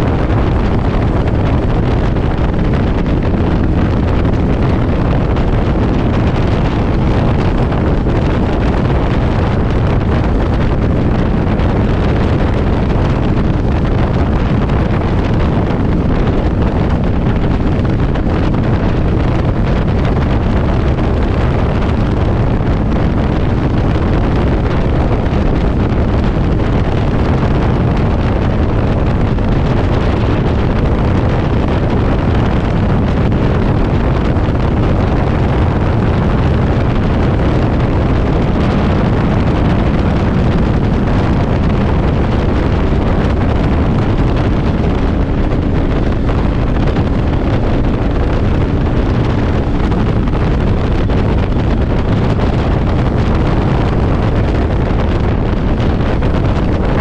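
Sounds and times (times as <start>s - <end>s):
wind buffeting microphone: 0.0s - 57.0s.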